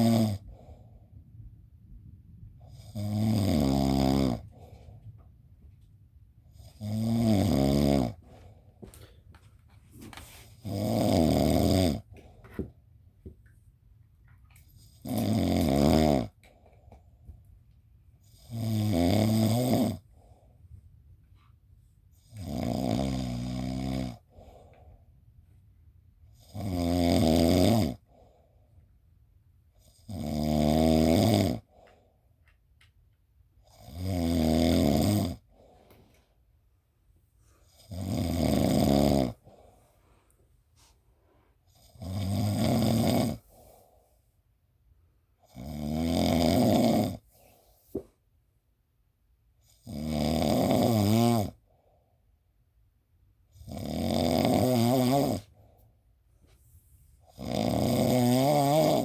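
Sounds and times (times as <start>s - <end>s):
loud snoring: 0.0s - 0.7s, 2.6s - 4.6s, 6.5s - 8.2s, 10.5s - 12.2s, 14.8s - 16.4s, 18.2s - 20.1s, 22.2s - 24.6s, 26.4s - 28.2s, 29.8s - 31.8s, 33.6s - 35.5s, 37.7s - 39.5s, 41.7s - 43.9s, 45.4s - 47.5s, 49.6s - 51.6s, 53.5s - 55.6s, 57.3s - 59.0s
soft breath: 0.4s - 1.5s, 4.4s - 5.4s, 8.2s - 10.6s, 35.5s - 36.6s, 39.4s - 41.7s, 47.2s - 48.2s.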